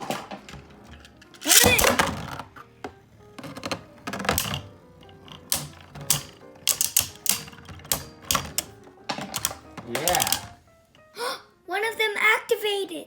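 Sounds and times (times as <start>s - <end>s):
spinning tops clacking together: 1.2s - 2.0s, 5.5s - 8.8s, 9.4s - 10.6s.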